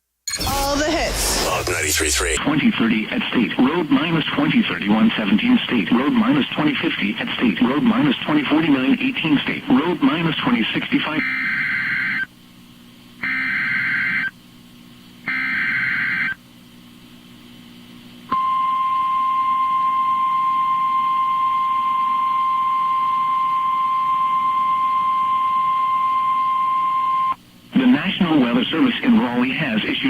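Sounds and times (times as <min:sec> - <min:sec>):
harsh digital warbling bursts: 0:00.3 - 0:02.4
steady warning alarm tone: 0:11.2 - 0:12.3, 0:13.2 - 0:14.3, 0:15.2 - 0:16.4.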